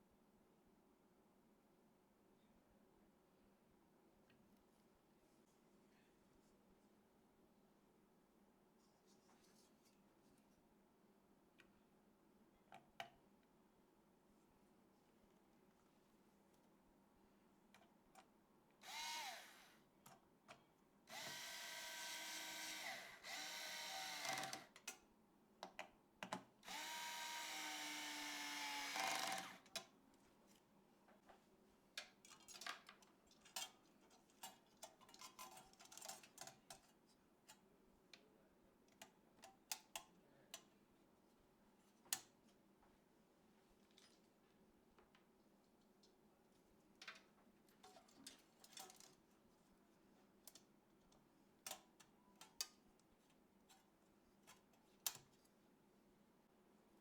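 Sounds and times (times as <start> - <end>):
electric screwdriver whirring: 18.8 - 19.8, 21.1 - 24.7, 26.7 - 29.6.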